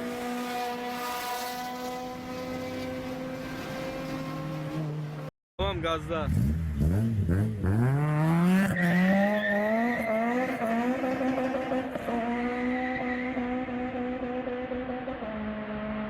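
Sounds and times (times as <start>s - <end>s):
car engine revving at full throttle: 6.2s - 16.0s.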